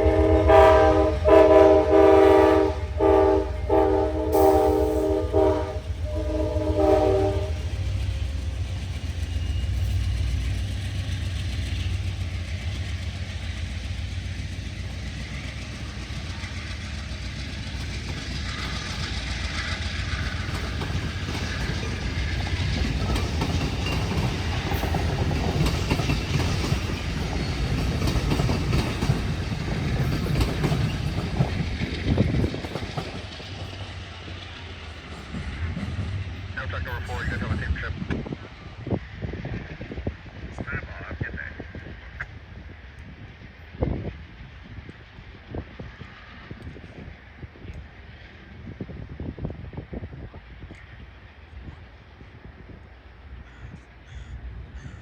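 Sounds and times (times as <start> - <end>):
locomotive air horn chord: 0.0 - 7.8
train wheels clattering: 0.0 - 36.5.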